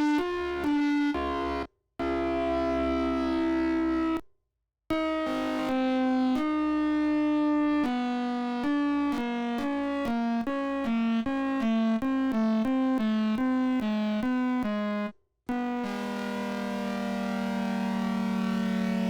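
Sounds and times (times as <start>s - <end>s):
electronic siren chords: 15.8s - 19.0s.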